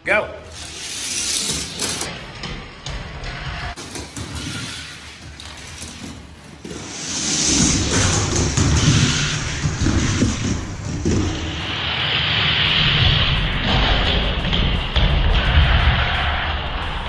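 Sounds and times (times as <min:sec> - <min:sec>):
toy cars rolling down plastic track: 0:00.5 - 0:02.1, 0:03.8 - 0:11.3.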